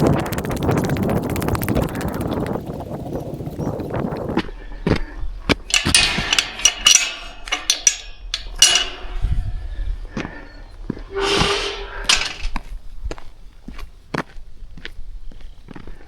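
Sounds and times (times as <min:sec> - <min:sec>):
footsteps: 0:04.2 - 0:14.4
gear knocking and clinking: 0:05.5 - 0:09.6
metallic rattles: 0:05.5 - 0:12.6.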